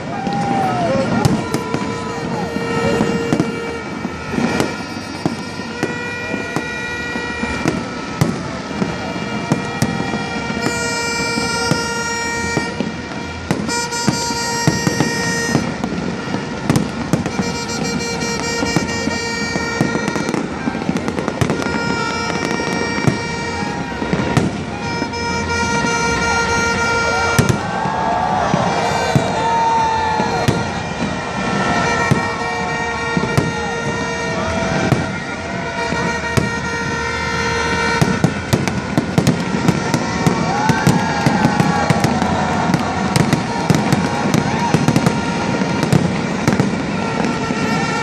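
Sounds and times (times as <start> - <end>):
fireworks bangs and crackles: 0.0 - 48.0
long horn toots: 0.0 - 48.0.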